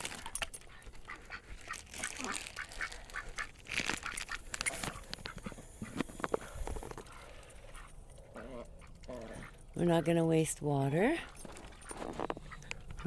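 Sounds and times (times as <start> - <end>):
duck bill clicks and slurps: 0.1 - 9.7.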